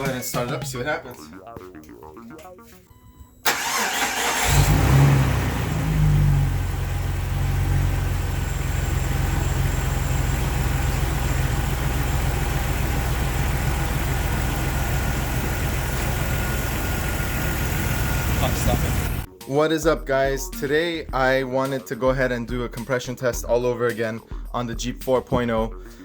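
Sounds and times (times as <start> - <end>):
car engine revving and idling: 3.5 - 19.3.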